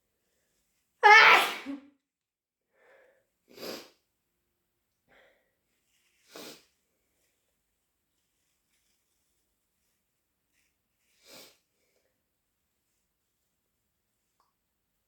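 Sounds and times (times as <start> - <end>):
person sneezing: 1.0 - 1.8.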